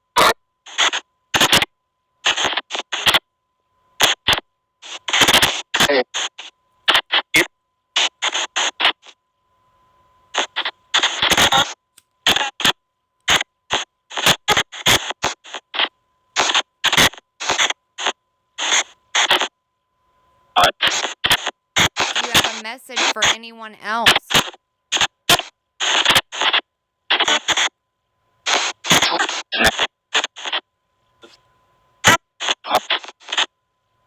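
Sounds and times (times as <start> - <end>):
chopped noise and voice snippets: 22.2 - 24.4
faint steady high tone: 22.2 - 24.4.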